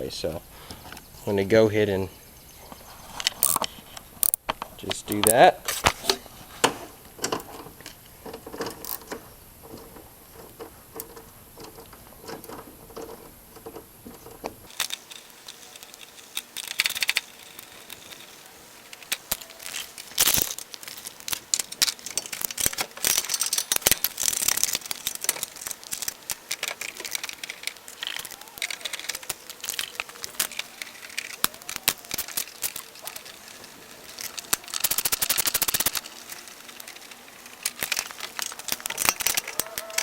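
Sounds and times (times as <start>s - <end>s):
hand tools clinking on metal bolts: 3.2s - 40.0s.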